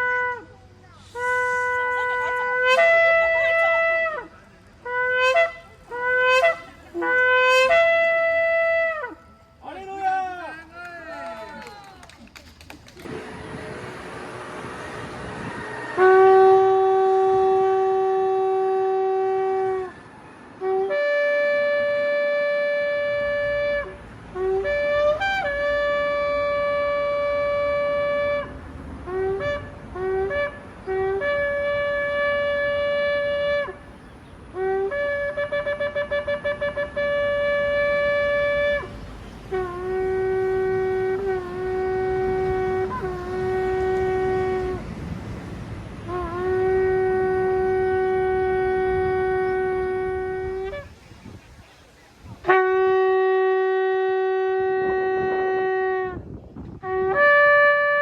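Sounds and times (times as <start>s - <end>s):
shofar blasts: 0.0s - 10.0s, 15.0s - 20.0s, 20.6s - 33.8s, 34.5s - 38.9s, 39.5s - 45.0s, 46.0s - 51.0s, 52.4s - 58.0s.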